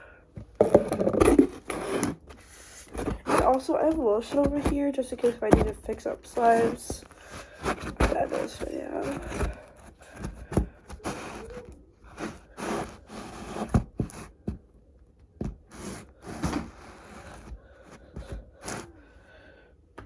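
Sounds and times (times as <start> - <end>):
objects scraping on a table: 0.6 - 3.5.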